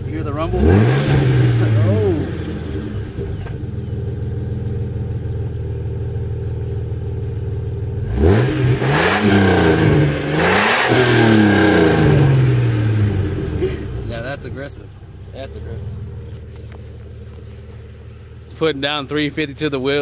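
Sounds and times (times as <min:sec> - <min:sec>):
car engine idling and revving: 0:00.0 - 0:20.0.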